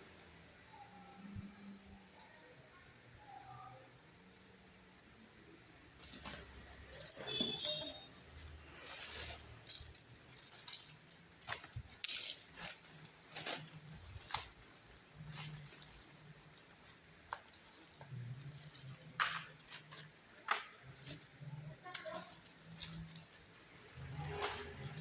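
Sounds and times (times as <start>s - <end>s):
packaging clicks and rustles: 6.0s - 25.0s.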